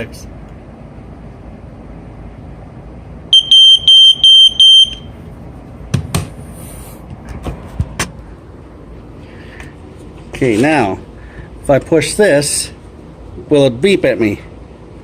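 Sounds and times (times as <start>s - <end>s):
smoke alarm beeping: 3.3s - 5.2s.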